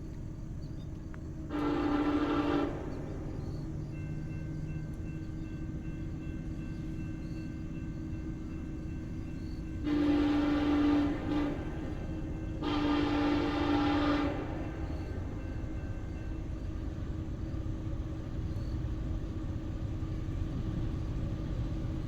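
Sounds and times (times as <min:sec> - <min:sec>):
locomotive low rumble: 0:00.0 - 0:22.0
locomotive air horn: 0:01.5 - 0:03.7, 0:09.8 - 0:15.4.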